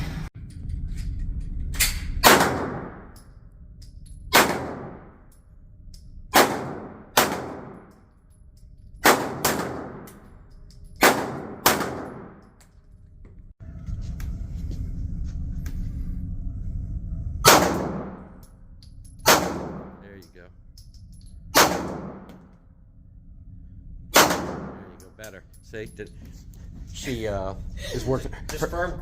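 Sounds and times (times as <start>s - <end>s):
pistol shots echoing: 6.4s - 7.9s, 9.0s - 10.1s, 11.0s - 12.4s, 21.6s - 22.4s, 24.2s - 24.8s.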